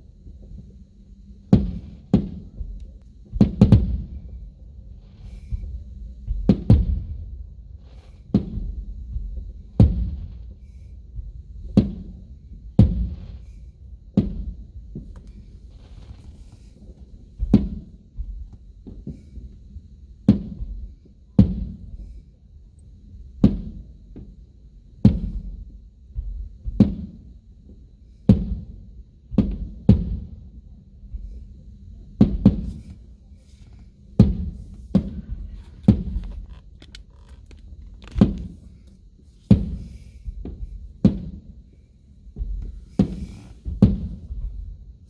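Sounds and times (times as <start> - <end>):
low rumbling echo: 0.0 - 16.6
firework shells booming: 3.2 - 16.7, 29.4 - 30.5, 32.2 - 38.8, 39.5 - 41.5, 42.4 - 44.7.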